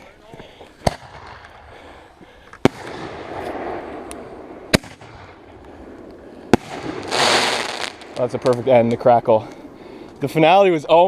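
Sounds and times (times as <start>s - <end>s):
fireworks bangs: 0.8s - 1.8s, 2.6s - 10.3s
fireworks hissing crackle: 2.6s - 10.8s.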